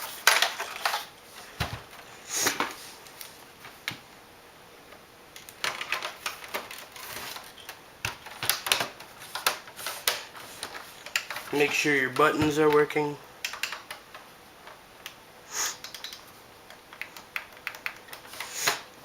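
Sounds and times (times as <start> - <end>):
plastic clicks and snaps: 12.7 - 15.2, 15.8 - 18.8.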